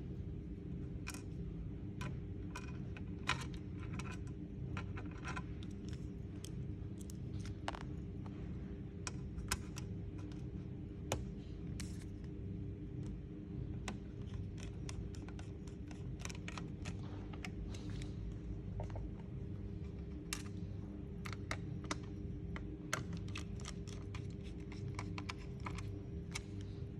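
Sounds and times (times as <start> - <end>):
steady low hum: 0.0 - 26.9.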